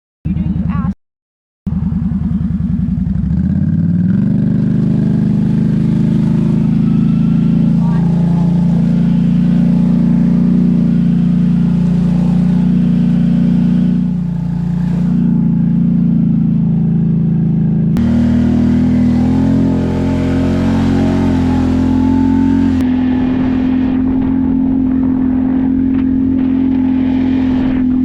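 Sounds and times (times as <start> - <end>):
atv engine running: 0.3 - 0.9, 1.7 - 28.0.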